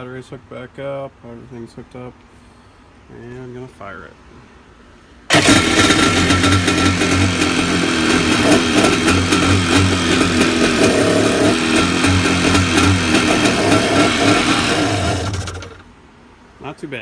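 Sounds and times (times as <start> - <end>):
jet ski engine running: 5.3 - 15.9.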